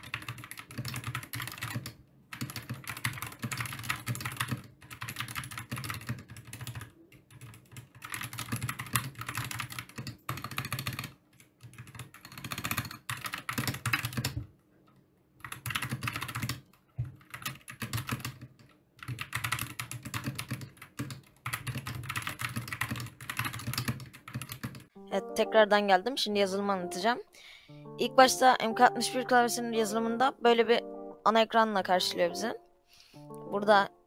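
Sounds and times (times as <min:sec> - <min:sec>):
fast typing on mechanical keyboard: 0:00.0 - 0:14.5, 0:15.4 - 0:24.9.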